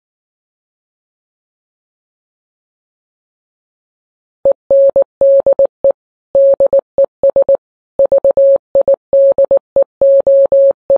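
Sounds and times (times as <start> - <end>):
morse code beeps: 4.5 - 10.9.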